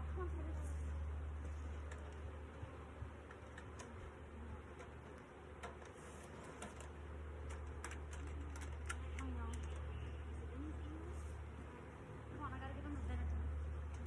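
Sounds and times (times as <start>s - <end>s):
honeybees buzzing: 0.4s - 5.6s, 9.2s - 14.0s.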